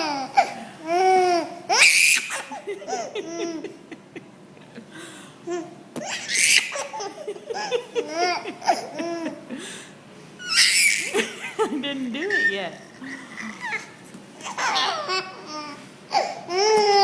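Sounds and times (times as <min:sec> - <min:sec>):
baby laughing: 0:00.0 - 0:04.0, 0:05.5 - 0:09.4, 0:10.4 - 0:11.7, 0:13.2 - 0:17.0.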